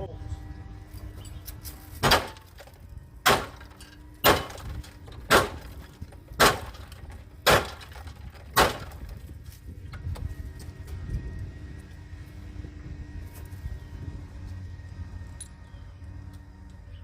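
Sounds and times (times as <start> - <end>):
sharp ringing knocks: 2.0 - 9.1.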